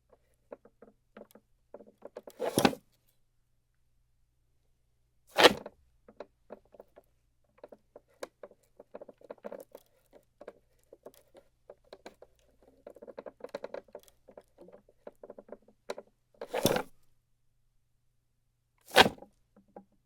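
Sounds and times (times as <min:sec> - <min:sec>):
wooden drawer clicks and rattles: 0:00.5 - 0:02.8, 0:10.4 - 0:16.9.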